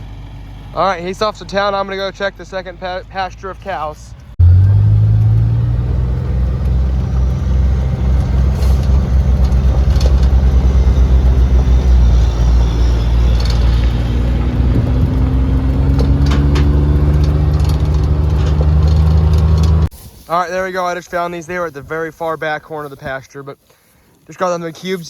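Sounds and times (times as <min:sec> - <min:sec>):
vehicle engine running: 0:00.0 - 0:19.9
faint rising whine: 0:04.4 - 0:18.8
knocks and rattles: 0:06.6 - 0:19.9.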